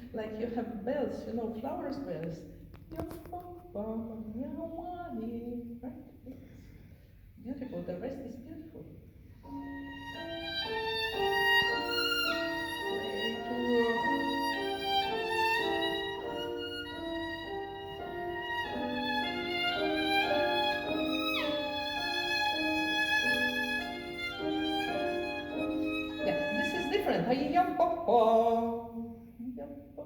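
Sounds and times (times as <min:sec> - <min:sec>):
solo violin playing: 0:09.5 - 0:27.4.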